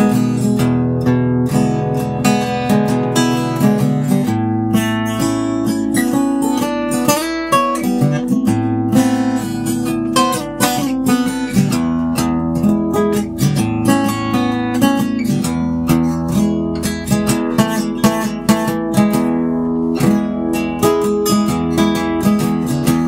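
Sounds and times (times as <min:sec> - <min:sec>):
acoustic guitar playing: 0:00.0 - 0:23.0.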